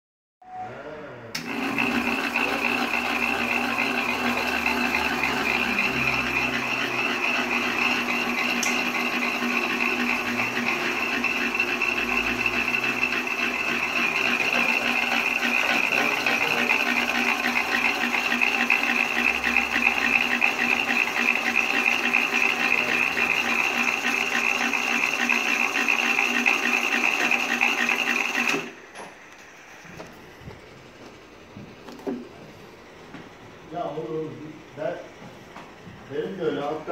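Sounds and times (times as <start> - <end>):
winding machine whine and rattle: 1.4 - 36.9.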